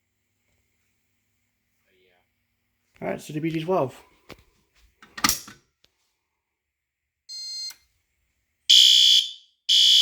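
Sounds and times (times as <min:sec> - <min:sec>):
fire alarm horns: 0:08.7 - 0:10.0.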